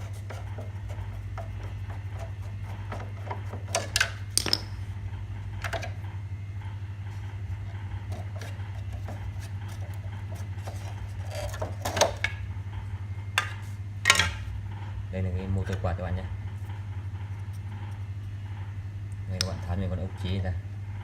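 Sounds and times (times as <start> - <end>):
steady low hum: 0.0 - 21.0
plastic parts clicking and knocking: 2.9 - 4.8.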